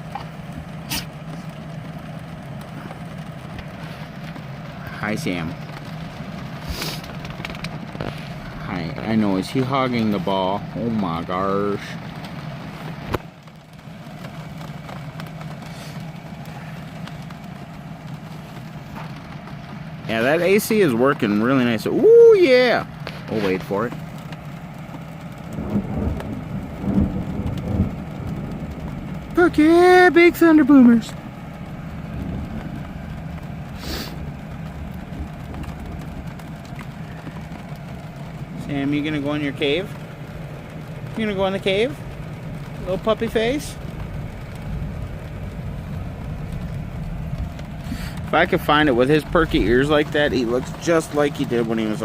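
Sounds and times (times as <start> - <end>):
brief hiss: 0.9 - 1.1, 6.6 - 7.0
rolling thunder rumble: 24.7 - 52.0.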